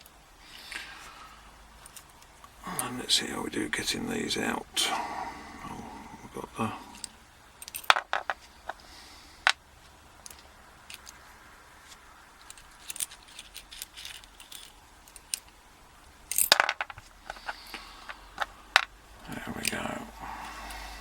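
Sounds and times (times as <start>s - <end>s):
small metal lock pin clicks: 7.6s - 7.9s.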